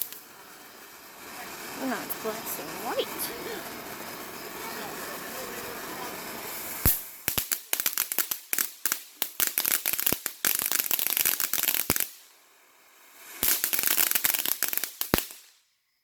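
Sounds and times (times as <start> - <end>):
crackling firework pops: 0.0 - 15.7.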